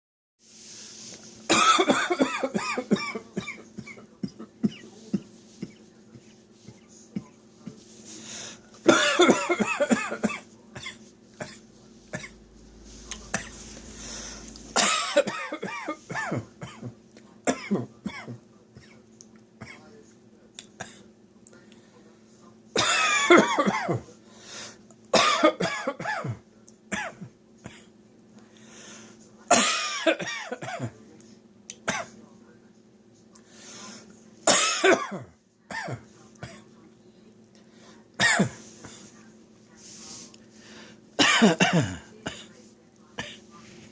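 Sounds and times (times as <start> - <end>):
person coughing: 1.5 - 5.9, 8.9 - 11.6, 13.3 - 16.9, 22.8 - 24.0, 25.2 - 26.4, 29.5 - 30.9, 34.5 - 36.6, 41.2 - 42.5.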